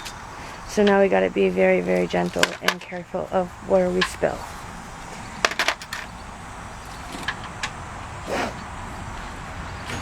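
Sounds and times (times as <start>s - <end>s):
sharp clicks under a car: 5.4s - 6.2s, 6.8s - 7.8s.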